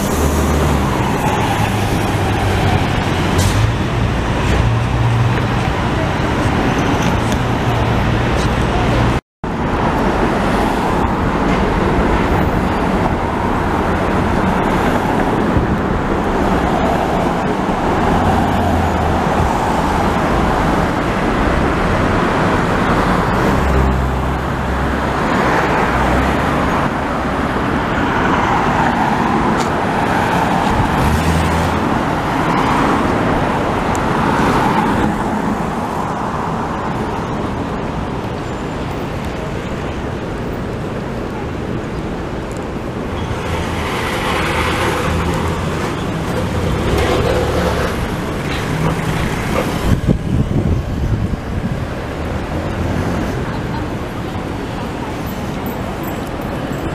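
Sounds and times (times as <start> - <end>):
road traffic noise: 0.0 - 56.9
vehicle engines rumbling past: 36.9 - 56.9.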